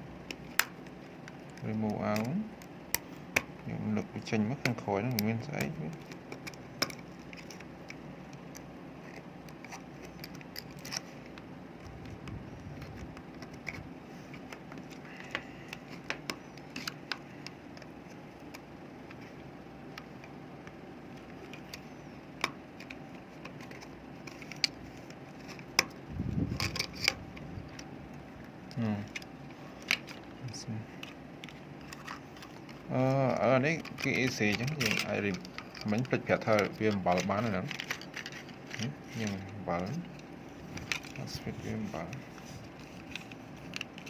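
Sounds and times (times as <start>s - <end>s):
faint steady hum: 0.0s - 44.0s
plastic parts clicking: 28.7s - 30.3s, 31.0s - 41.4s.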